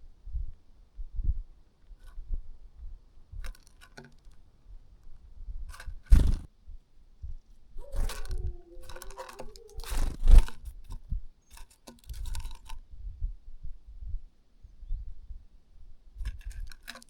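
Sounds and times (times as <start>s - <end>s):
birds scratching and pecking: 3.4s - 6.5s, 7.5s - 12.8s, 16.2s - 17.0s.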